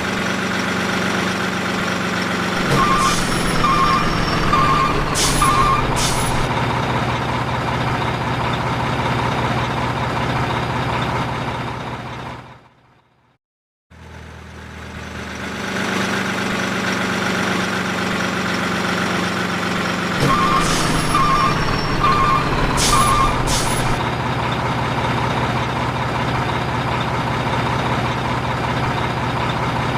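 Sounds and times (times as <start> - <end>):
large engine running: 0.0 - 12.8, 14.0 - 29.9
short beeps: 2.6 - 6.4, 20.2 - 24.0.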